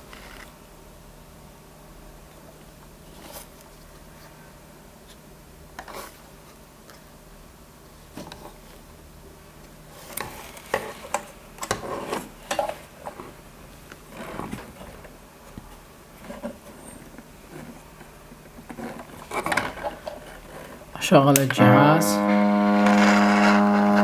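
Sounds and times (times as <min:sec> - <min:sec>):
faint steady hum: 0:21.0 - 0:24.0.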